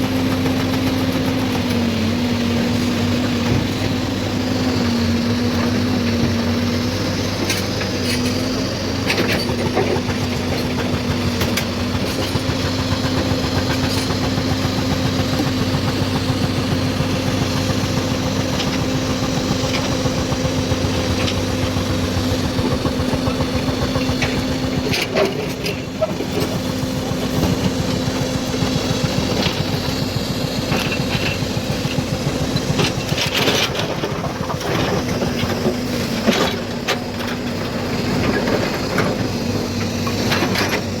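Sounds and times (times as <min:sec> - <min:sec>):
excavator diesel engine running: 0:00.0 - 0:41.0
machine knocking and clattering rock: 0:05.4 - 0:41.0.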